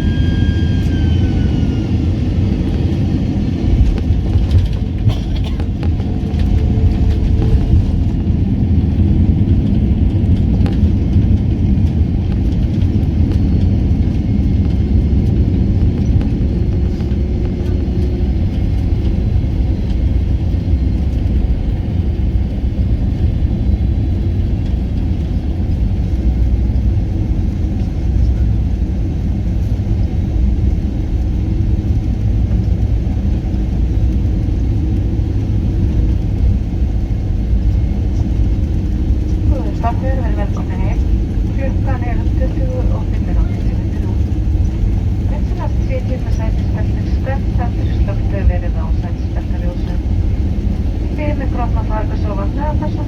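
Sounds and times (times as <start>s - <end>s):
airliner cabin engine rumble: 0.0s - 53.0s.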